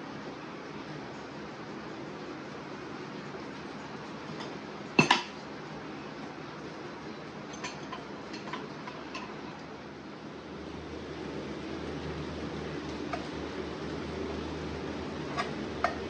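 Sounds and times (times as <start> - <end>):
metal tools clanking on wheel rim: 7.5 - 9.4.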